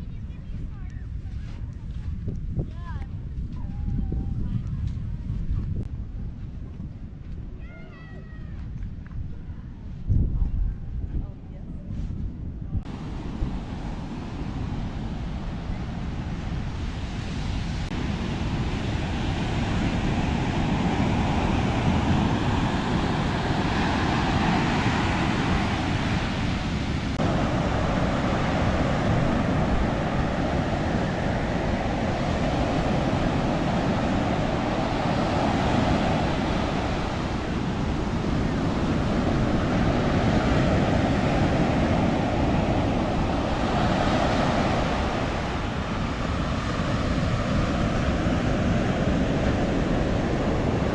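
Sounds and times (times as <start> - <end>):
wind buffeting microphone: 0.0 - 50.9
surf breaking on beach: 12.9 - 50.9.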